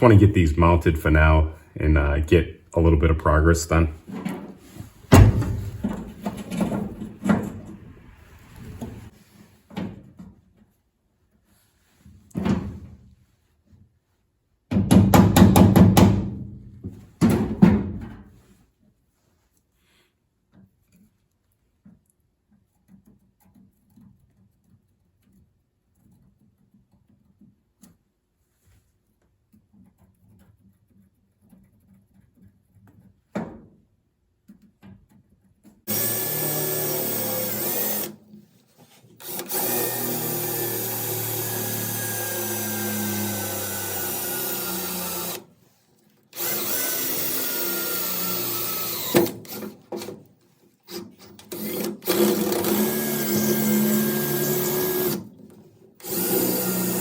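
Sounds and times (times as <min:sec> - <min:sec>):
knock: 0:14.7 - 0:18.3
power drill running: 0:35.9 - 0:38.2, 0:39.2 - 0:45.5, 0:46.3 - 0:50.1, 0:50.8 - 0:55.4, 0:56.0 - 0:57.0.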